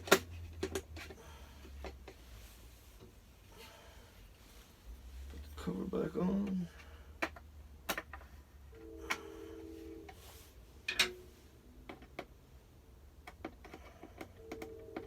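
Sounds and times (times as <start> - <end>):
plastic parts clicking: 0.0 - 2.2.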